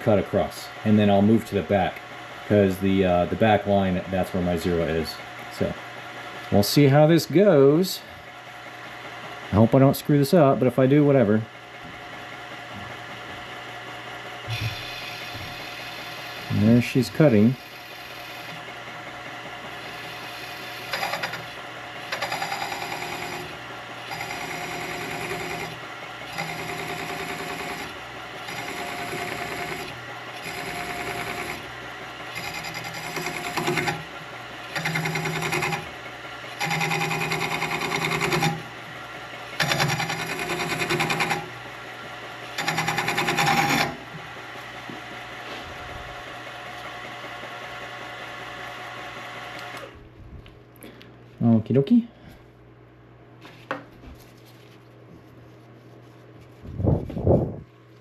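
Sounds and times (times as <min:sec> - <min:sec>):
end mill cutting carbon fiber: 0:12.0 - 0:45.6
milling spindle hum: 0:14.5 - 0:44.7.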